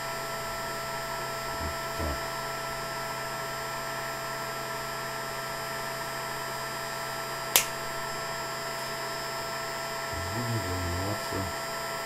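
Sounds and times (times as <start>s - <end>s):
electrical hum: 1.4s - 2.5s, 10.0s - 12.0s
sharp click: 7.6s - 7.8s.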